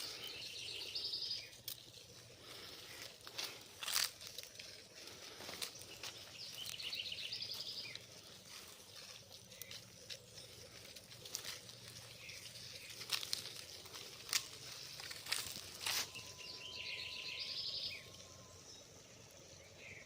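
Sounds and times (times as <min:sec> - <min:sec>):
birds singing: 0:00.0 - 0:20.0.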